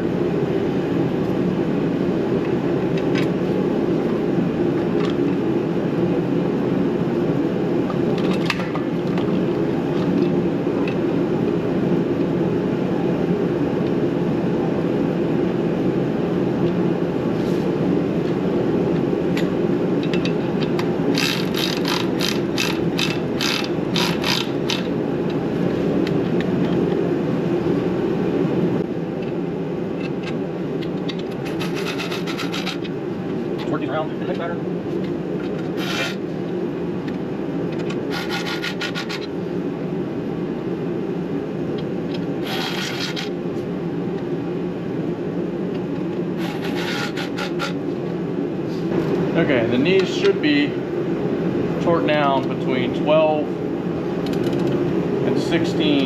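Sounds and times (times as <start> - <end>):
steady background hum: 0.0 - 56.0
ratchet wrench clicking: 21.1 - 24.9
tools and parts knocking: 30.9 - 32.9.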